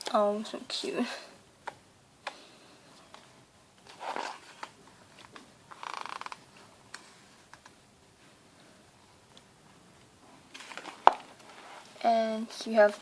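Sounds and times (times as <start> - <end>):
pages fluttering: 3.8 - 6.4, 10.5 - 11.6.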